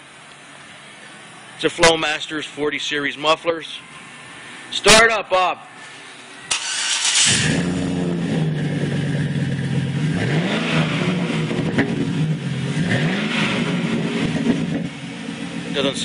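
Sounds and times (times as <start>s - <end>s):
pickup engine idling and revving: 6.5s - 16.0s.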